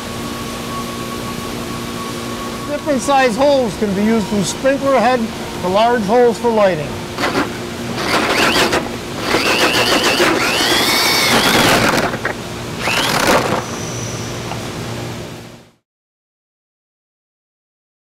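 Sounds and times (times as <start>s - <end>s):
hole saw scraping through drywall: 7.2s - 13.7s
power drill motor whine: 7.2s - 14.2s.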